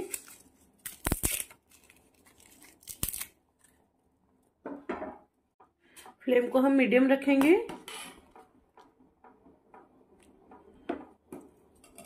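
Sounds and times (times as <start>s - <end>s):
dry leaves crackling and snapping: 0.1s - 3.3s.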